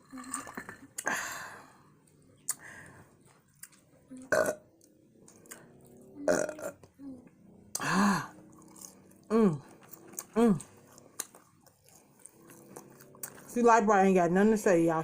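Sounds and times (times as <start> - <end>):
person burping loudly: 4.2 - 4.7, 6.2 - 6.9, 9.3 - 9.6.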